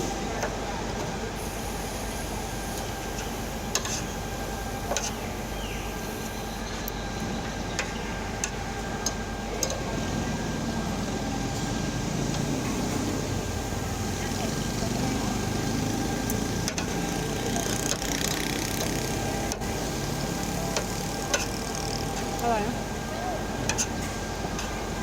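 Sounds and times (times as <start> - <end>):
busy market din: 9.3 - 25.0.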